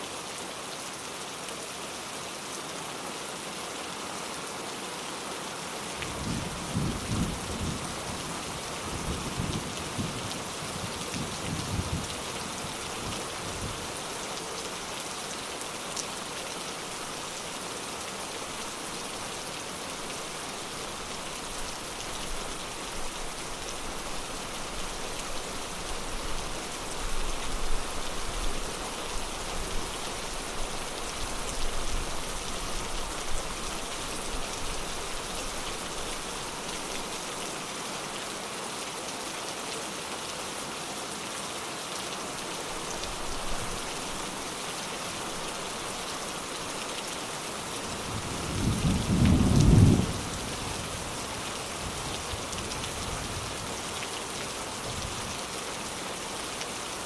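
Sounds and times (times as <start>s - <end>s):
steady rain: 0.0s - 57.0s
low thunder rumbling: 48.1s - 50.5s.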